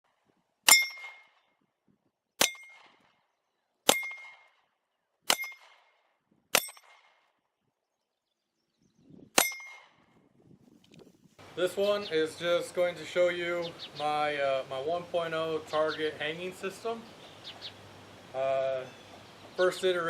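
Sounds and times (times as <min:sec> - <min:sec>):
steel target plate clangs: 0:00.7 - 0:01.3, 0:02.4 - 0:02.9, 0:03.9 - 0:04.4, 0:05.3 - 0:05.6, 0:06.6 - 0:06.9, 0:09.4 - 0:09.8.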